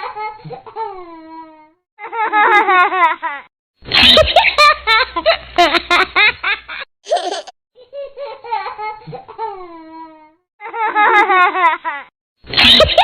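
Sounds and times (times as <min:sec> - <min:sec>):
babies laughing: 0:04.0 - 0:09.7.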